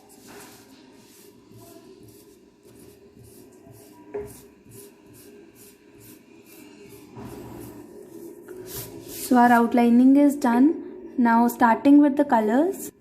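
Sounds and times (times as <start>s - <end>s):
eraser rubbing on paper: 0.0s - 9.6s.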